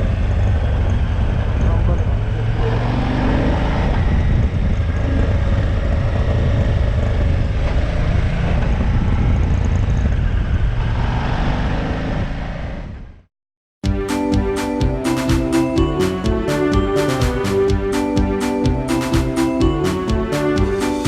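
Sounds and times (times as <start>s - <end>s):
motorcycle engine: 0.0s - 12.9s
wind rush on microphone: 3.2s - 13.3s.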